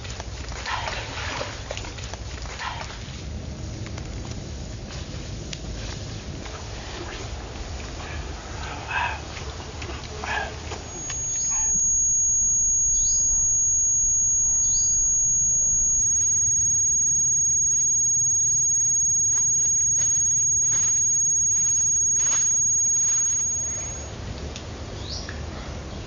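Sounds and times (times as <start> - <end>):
short falling chirps: 10.9 - 24.1
steady high-pitched tone: 10.9 - 24.1.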